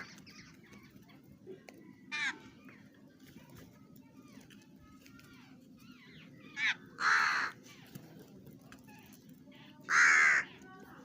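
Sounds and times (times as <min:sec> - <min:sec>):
crow cawing: 0:06.6 - 0:07.6, 0:09.8 - 0:10.6.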